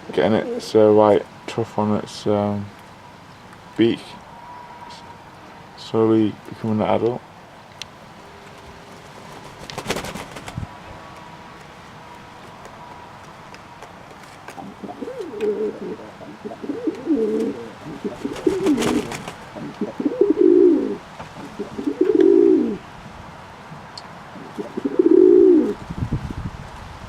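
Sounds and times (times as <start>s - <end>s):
pigeons cooing: 0.1s - 0.8s, 14.5s - 22.8s, 24.3s - 25.8s.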